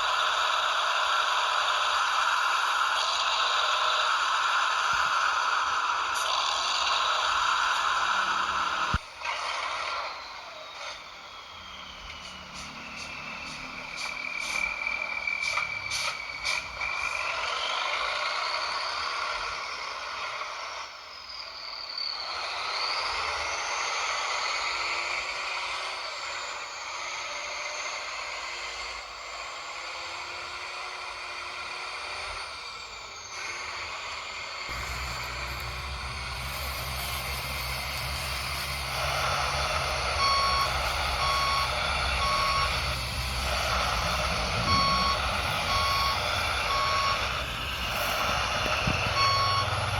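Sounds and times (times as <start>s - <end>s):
toy truck motor whining: 0.0s - 49.9s
low engine-like rumble: 34.7s - 49.9s
reversing beeps: 34.7s - 49.9s.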